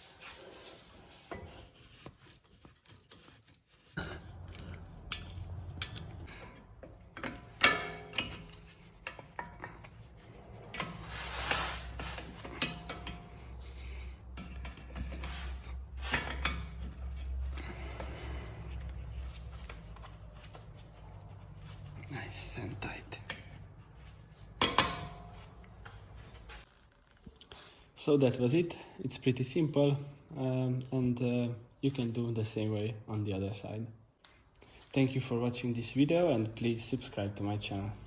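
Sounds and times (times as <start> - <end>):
tools rubbing and scraping: 0.0 - 26.8
sharp knocks of tools: 24.6 - 25.3.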